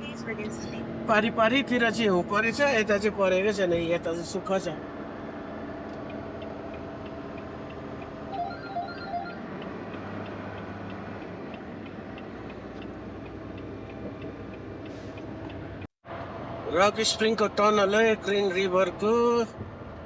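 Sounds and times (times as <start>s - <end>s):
truck engine and road noise: 0.0s - 20.0s
light ticking: 5.9s - 8.2s, 9.6s - 15.9s.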